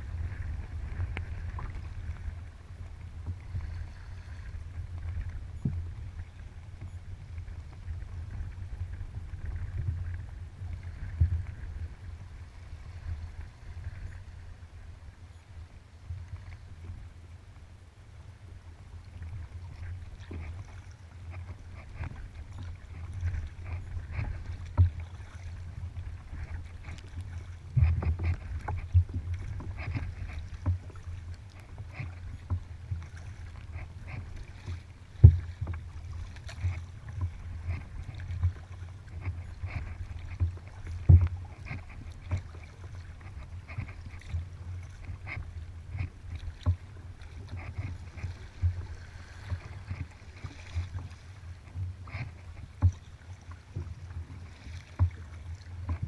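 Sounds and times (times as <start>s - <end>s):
water slapping against hull: 0.0s - 14.5s, 19.0s - 56.0s
paddle knocks: 26.2s - 45.3s.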